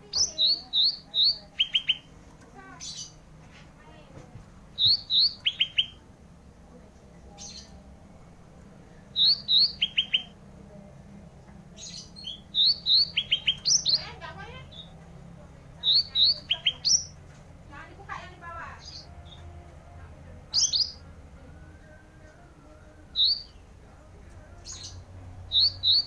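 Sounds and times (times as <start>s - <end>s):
songbird singing: 0.0s - 26.0s.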